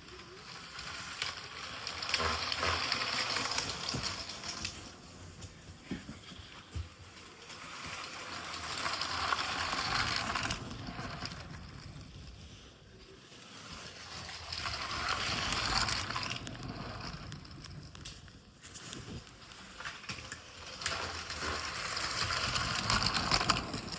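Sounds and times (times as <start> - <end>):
toy train whirring clatter: 0.0 - 23.9.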